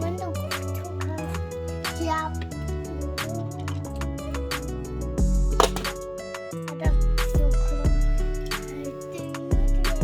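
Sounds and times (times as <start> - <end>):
music with bass guitar and drums: 0.0 - 10.0.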